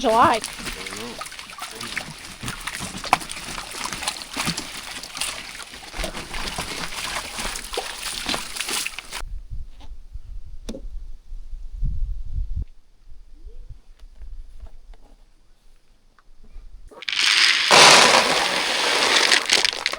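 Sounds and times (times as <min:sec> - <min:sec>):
rainwater running and trickling: 0:00.0 - 0:09.2, 0:17.0 - 0:19.9
water sloshing and splashing: 0:00.0 - 0:09.2, 0:17.0 - 0:19.9.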